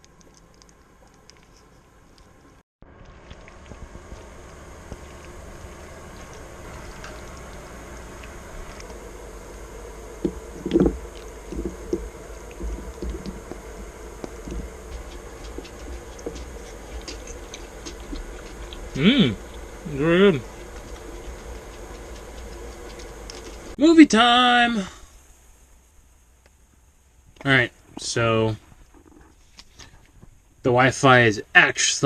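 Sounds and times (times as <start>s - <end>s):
hissing heating pan: 2.8s - 26.6s.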